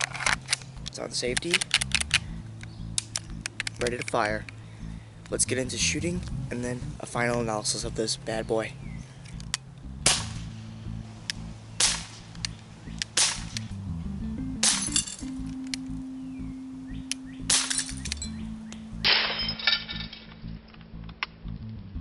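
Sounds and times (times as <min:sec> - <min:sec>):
faint background music: 0:00.0 - 0:22.0
air pistol shots: 0:10.0 - 0:10.5, 0:11.8 - 0:13.7, 0:14.6 - 0:15.1, 0:17.5 - 0:18.2
metallic clink and ringing: 0:14.7 - 0:15.4, 0:19.1 - 0:20.4.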